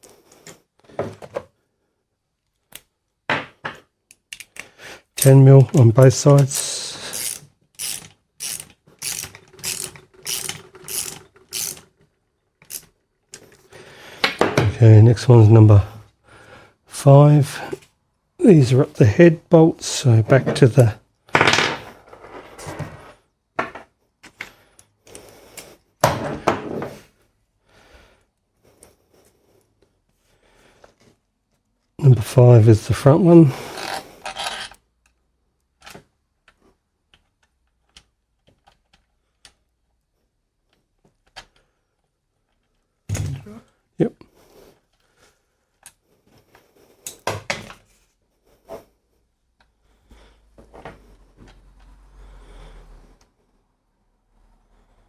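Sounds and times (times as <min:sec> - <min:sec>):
tools clicking and knocking: 0:02.6 - 0:13.6.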